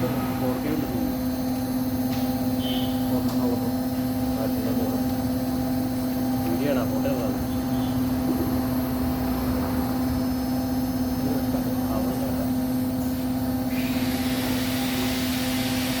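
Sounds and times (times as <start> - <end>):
washing machine motor and drum hum: 0.0 - 16.0
hiss: 13.7 - 16.0.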